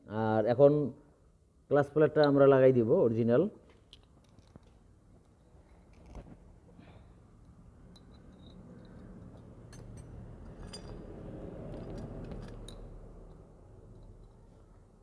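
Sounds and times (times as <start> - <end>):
metal clutch plates clinking: 7.4 - 14.7.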